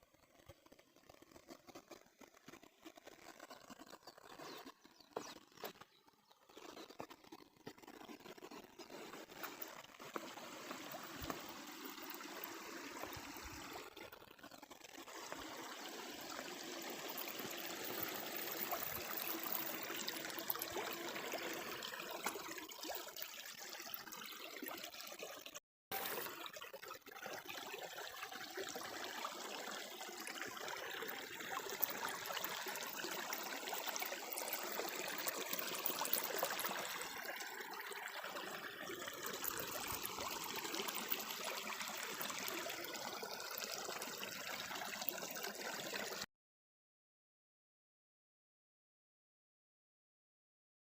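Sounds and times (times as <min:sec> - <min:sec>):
brook trickling and babbling: 0:00.0 - 0:46.3.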